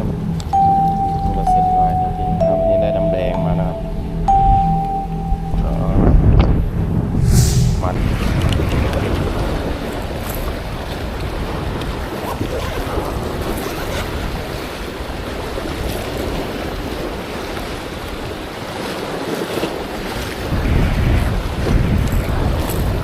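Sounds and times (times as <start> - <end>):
wind buffeting microphone: 5.6 - 23.0
waves washing on shore: 7.8 - 23.0.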